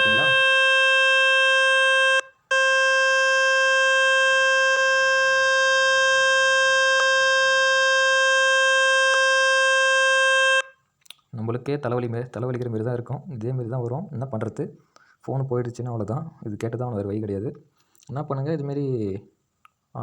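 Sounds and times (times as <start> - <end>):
phone speaker buzzing tone: 0.0 - 10.7.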